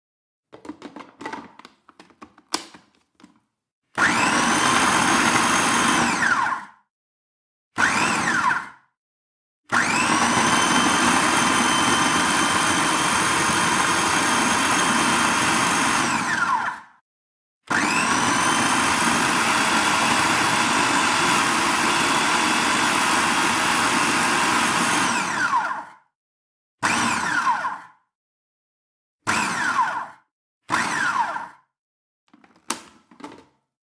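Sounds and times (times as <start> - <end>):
blender motor whining: 4.0 - 6.8, 7.8 - 8.8, 9.7 - 16.9, 17.7 - 26.0, 26.8 - 28.0, 29.3 - 31.6.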